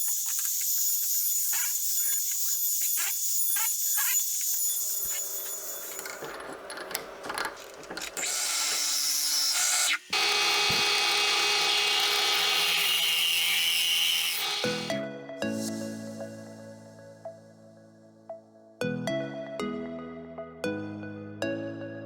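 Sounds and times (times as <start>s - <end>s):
power tool working on wood: 0.0s - 14.9s
clicks and knocks: 5.9s - 8.2s.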